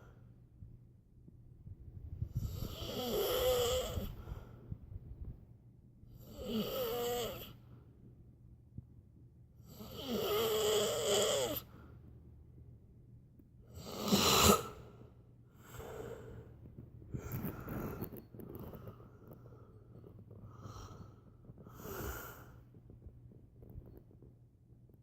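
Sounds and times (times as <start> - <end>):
man snoring: 2.4 - 4.2, 6.2 - 7.5, 9.6 - 11.7, 13.8 - 14.8.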